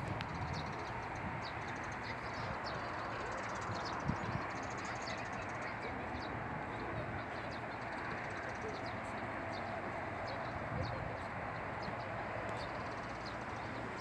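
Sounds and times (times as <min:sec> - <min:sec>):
wind: 0:00.0 - 0:14.0.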